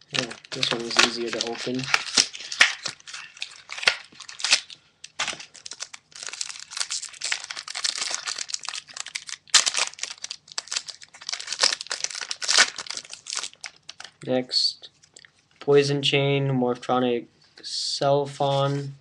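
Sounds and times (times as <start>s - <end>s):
wrapper crinkling and tearing: 0.0s - 14.2s.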